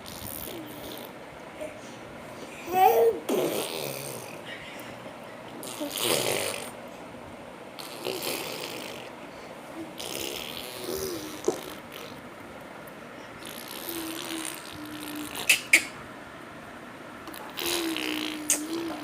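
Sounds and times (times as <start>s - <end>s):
baby making breathy noises: 17.3s - 19.0s.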